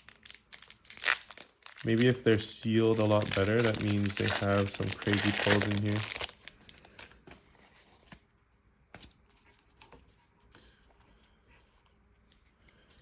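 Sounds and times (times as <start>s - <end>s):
plastic packaging clicks and crinkles: 0.0s - 7.4s.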